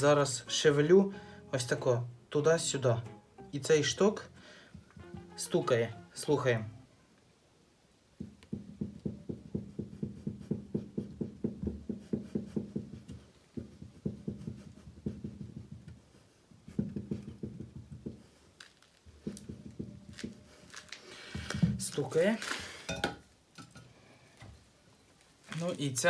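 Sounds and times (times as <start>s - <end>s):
shock absorber knocking: 8.2s - 18.4s, 19.1s - 20.5s.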